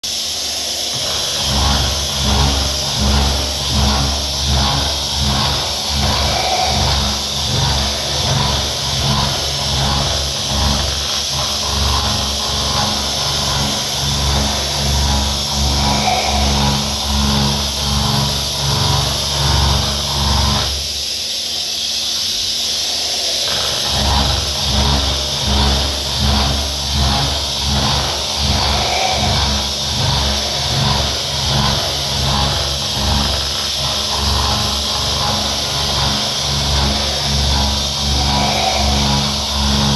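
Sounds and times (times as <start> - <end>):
low machine hum: 0.0 - 39.9
milling machine cutting hiss: 0.0 - 39.9.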